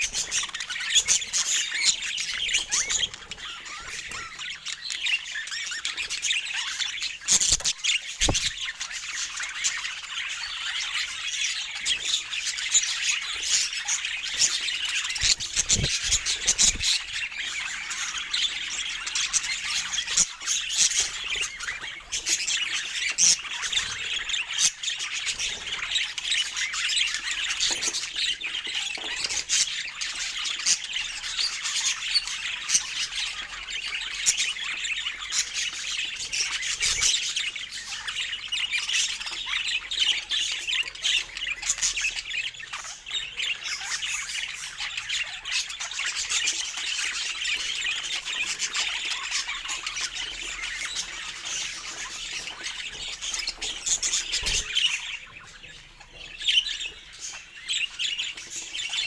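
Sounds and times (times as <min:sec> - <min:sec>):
budgerigars chirping: 0:00.0 - 0:59.0.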